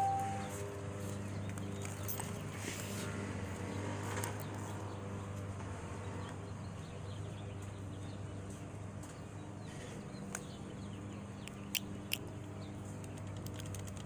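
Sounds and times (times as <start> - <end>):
faint bird chirps: 0.0 - 0.6.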